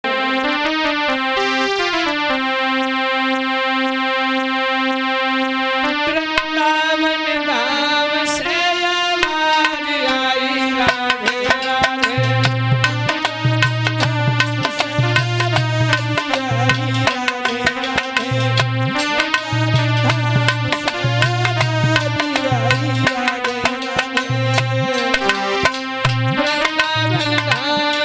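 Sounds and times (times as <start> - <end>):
held keyboard chords: 0.0 - 28.0
melody with pitch bends: 0.1 - 8.1, 11.5 - 28.0
tabla strokes: 9.2 - 28.0.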